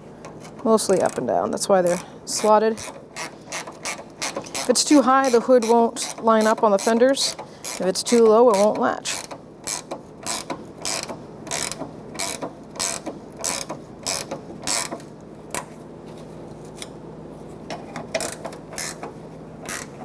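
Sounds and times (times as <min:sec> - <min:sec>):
ratchet wrench clicking: 0:01.9 - 0:15.1, 0:18.2 - 0:20.0.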